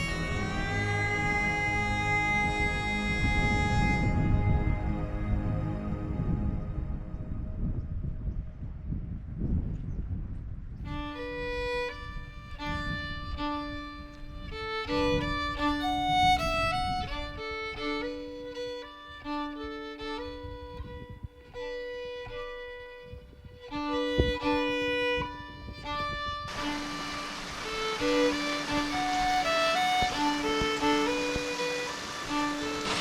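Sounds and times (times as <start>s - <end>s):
fiddle playing held notes: 0.0s - 8.0s, 10.8s - 33.0s
low rumble: 0.0s - 11.3s.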